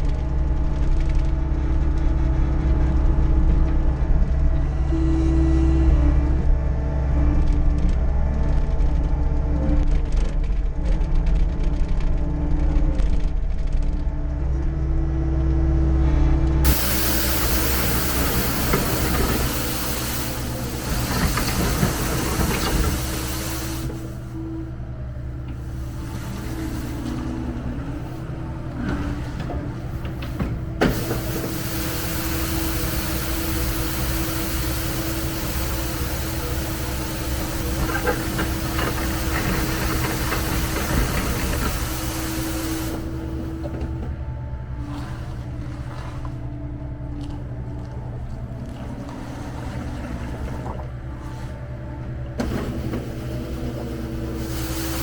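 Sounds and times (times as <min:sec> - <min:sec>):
diesel engine running: 0:16.5 - 0:55.0
sweeper brush hissing on pavement: 0:16.7 - 0:24.4, 0:25.6 - 0:29.3, 0:29.9 - 0:43.6, 0:52.4 - 0:55.0
steady tone: 0:16.7 - 0:44.7.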